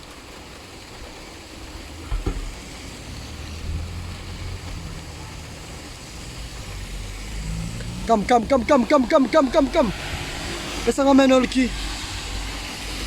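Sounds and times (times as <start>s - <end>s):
rain hissing: 0.0s - 13.0s
low engine hum: 0.6s - 13.0s
knock: 2.1s - 2.5s.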